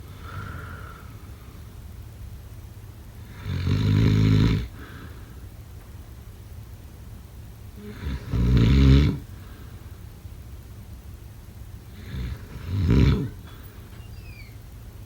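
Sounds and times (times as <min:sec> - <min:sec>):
quiet breathing: 0:00.0 - 0:01.8, 0:04.7 - 0:05.5, 0:09.2 - 0:10.0, 0:13.3 - 0:14.0
person snoring: 0:07.8 - 0:09.2.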